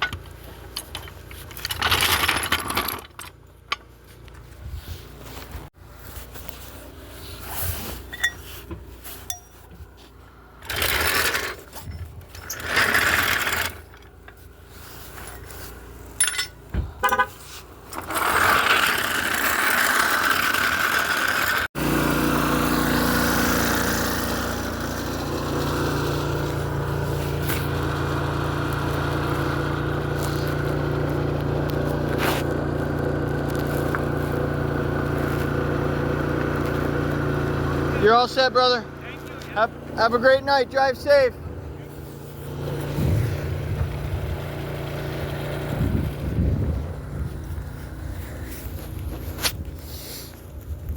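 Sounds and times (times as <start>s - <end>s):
vehicle engine running: 3.4s - 50.9s
tool noise bursts: 12.4s - 13.9s.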